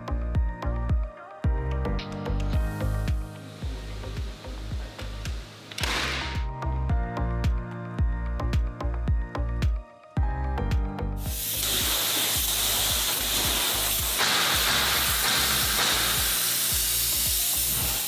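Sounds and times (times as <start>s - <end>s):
background music with a beat: 0.0s - 18.0s
loud hiss of air or steam: 3.4s - 6.4s, 11.2s - 18.0s.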